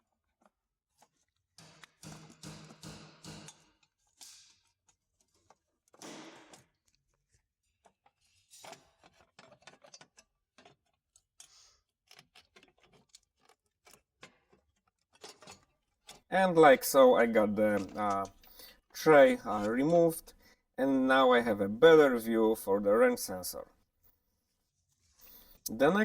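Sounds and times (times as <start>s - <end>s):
hand tools clicking and scraping: 7.8s - 20.4s.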